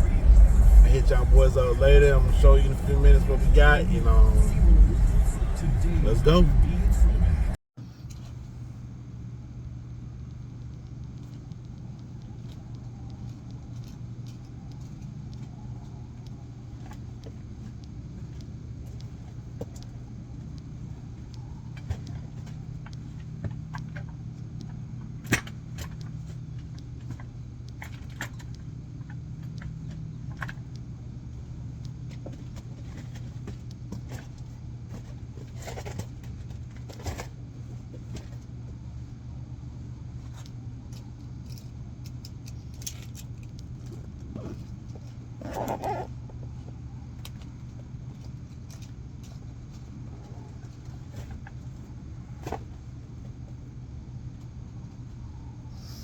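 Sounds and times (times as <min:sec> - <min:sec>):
brief loud noise: 0:00.0 - 0:07.6
car engine hum from inside: 0:00.0 - 0:07.6
light clicks and rattles: 0:40.2 - 0:45.2.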